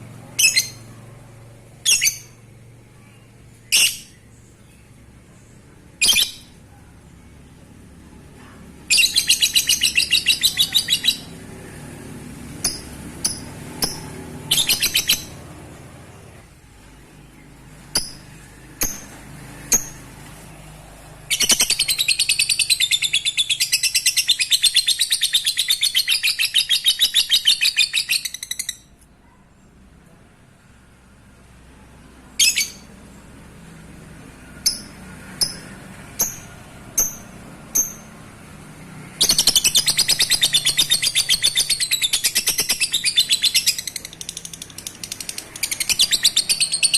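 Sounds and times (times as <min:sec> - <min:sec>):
bird chirps: 0:01.8 - 0:07.8, 0:08.8 - 0:11.4, 0:12.6 - 0:15.5, 0:21.2 - 0:29.0, 0:39.0 - 0:46.9
lovebird chattering trill: 0:12.6 - 0:15.4.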